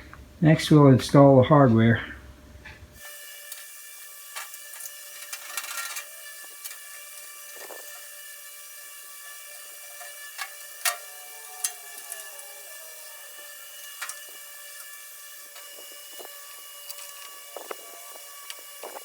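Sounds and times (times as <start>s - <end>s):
steady hum: 0.0s - 19.0s
small parts clicking and knocking: 4.3s - 8.2s, 9.2s - 19.0s.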